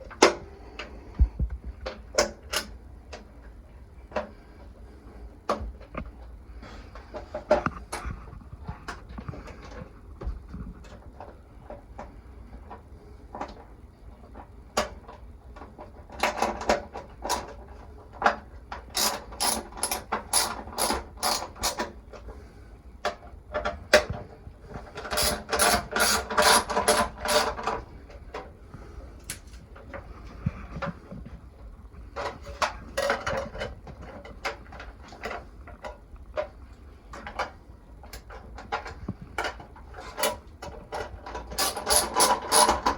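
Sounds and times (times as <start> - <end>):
ratchet clicking: 41.6 - 42.9.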